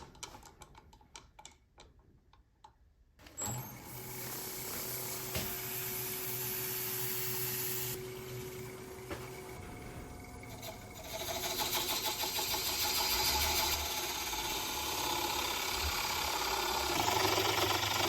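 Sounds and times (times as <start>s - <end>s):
wood lathe motor hum: 10.4s - 18.0s.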